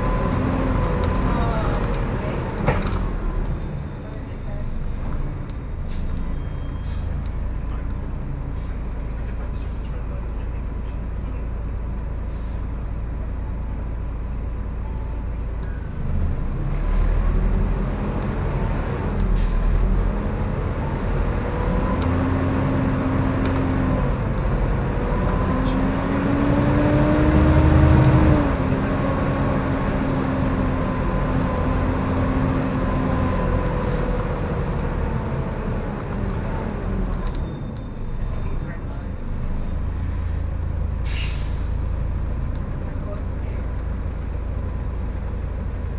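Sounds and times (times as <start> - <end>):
bus engine: 0.0 - 45.9.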